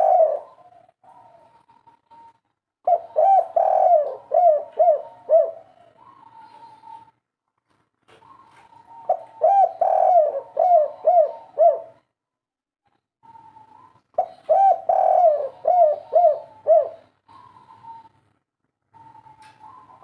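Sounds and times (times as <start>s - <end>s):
dove cooing: 0.0s - 7.2s, 8.1s - 12.1s, 13.2s - 20.0s.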